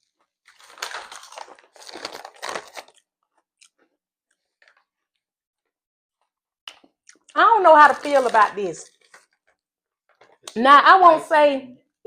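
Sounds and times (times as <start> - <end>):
person chewing crunchy snack: 0.5 - 3.9.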